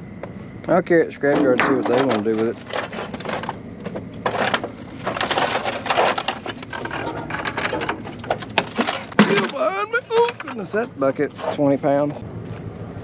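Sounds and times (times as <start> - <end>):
scrap metal clattering: 1.2 - 12.2.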